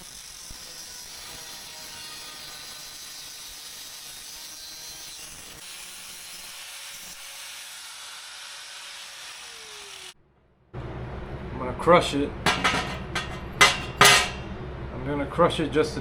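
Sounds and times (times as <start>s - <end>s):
power saw cutting steel pipe: 0.0s - 10.2s, 12.5s - 14.4s.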